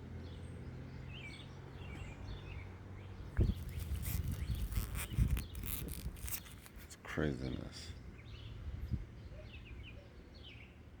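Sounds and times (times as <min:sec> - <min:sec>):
material rustling and clicking: 0:03.5 - 0:06.9.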